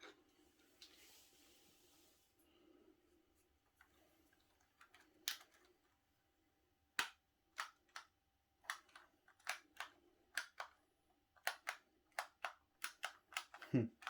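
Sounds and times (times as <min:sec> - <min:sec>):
mechanical keyboard clicks: 0:07.0 - 0:10.8, 0:11.4 - 0:14.0.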